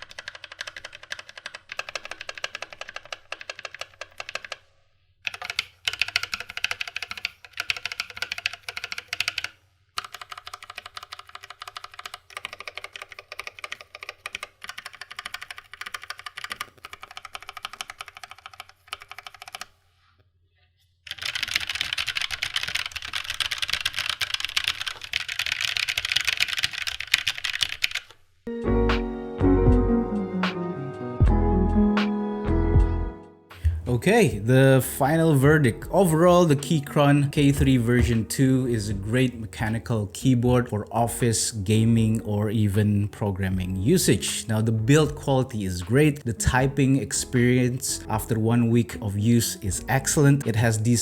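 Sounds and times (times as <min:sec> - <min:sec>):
mechanical keyboard typing: 0:00.0 - 0:04.6, 0:05.2 - 0:19.7, 0:21.1 - 0:28.2, 0:35.0 - 0:48.6.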